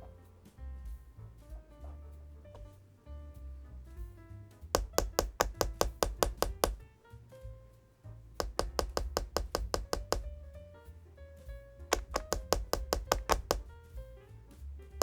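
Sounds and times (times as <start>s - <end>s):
soft background music: 0.0s - 15.0s
keyboard typing: 4.7s - 6.9s, 8.4s - 10.4s, 11.9s - 13.7s.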